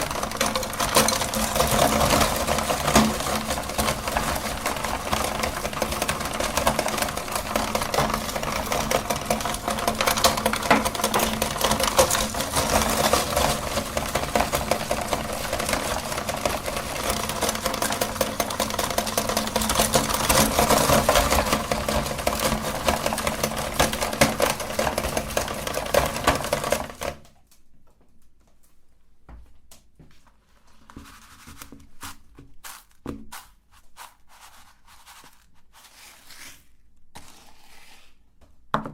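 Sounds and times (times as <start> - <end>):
meat grinder crunching candy: 0.0 - 27.2, 31.9 - 36.5.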